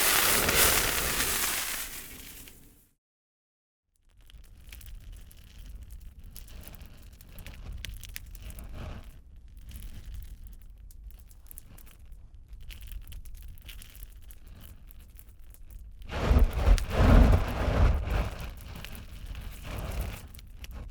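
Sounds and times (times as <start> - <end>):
fire pops and snaps: 0.0 - 2.7, 15.5 - 20.7
low rumble of flames: 0.0 - 2.7, 4.5 - 20.9.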